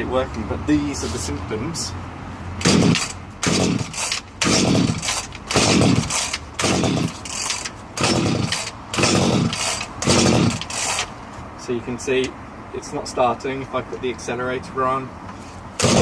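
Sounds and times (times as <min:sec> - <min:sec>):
chainsaw recoil starter pulls: 0:02.6 - 0:11.1, 0:15.8 - 0:16.0.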